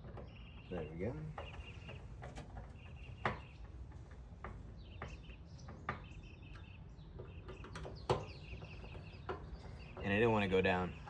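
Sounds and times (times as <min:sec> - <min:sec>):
birds chirping: 0:00.2 - 0:02.0, 0:04.8 - 0:11.0.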